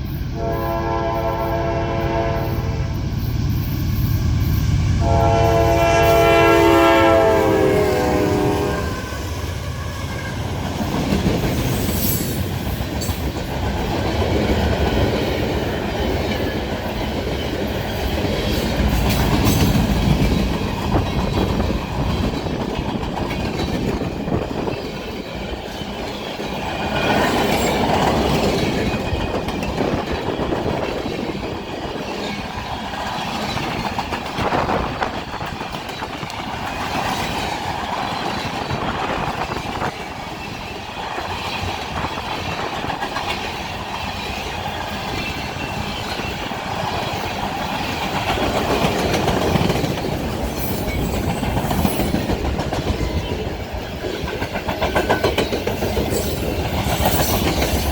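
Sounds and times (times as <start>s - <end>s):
freight train rumble: 0.0s - 57.9s.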